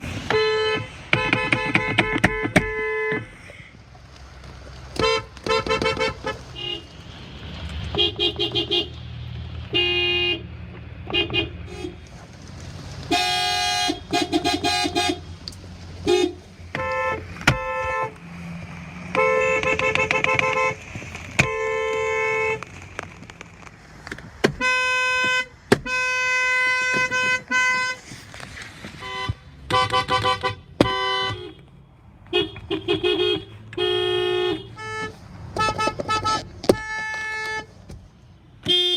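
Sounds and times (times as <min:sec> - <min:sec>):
car horns honking: 0:00.2 - 0:03.4, 0:05.0 - 0:07.0, 0:07.9 - 0:09.0, 0:09.7 - 0:12.0, 0:13.1 - 0:15.3, 0:16.0 - 0:18.3, 0:19.1 - 0:22.8, 0:24.4 - 0:28.1, 0:28.9 - 0:37.8, 0:38.6 - 0:38.9.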